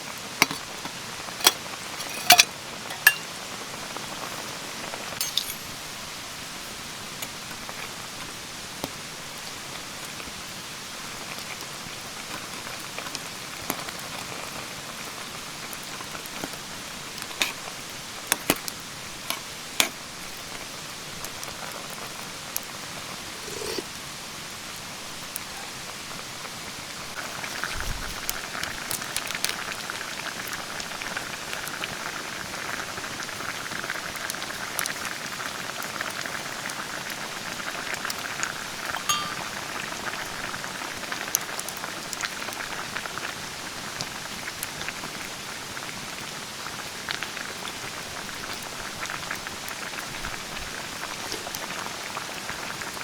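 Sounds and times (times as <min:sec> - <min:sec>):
sharp clicks and clinks: 0:01.4 - 0:03.3, 0:05.2 - 0:05.9, 0:39.0 - 0:39.6.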